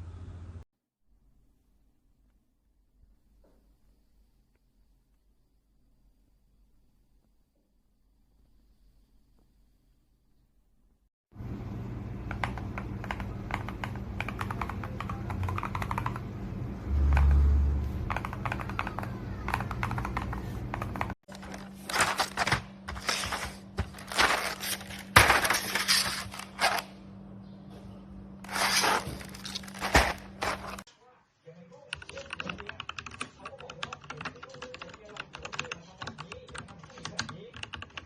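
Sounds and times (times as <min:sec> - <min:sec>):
keyboard keycaps clicking: 0:18.1 - 0:24.8, 0:31.9 - 0:38.0
clattering and scraping: 0:21.3 - 0:26.9, 0:28.5 - 0:30.9.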